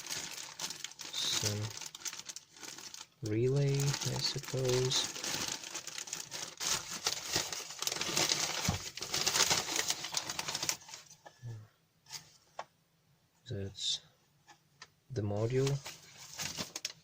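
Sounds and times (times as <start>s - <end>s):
packing material crinkling: 0.0s - 11.2s, 15.5s - 17.0s.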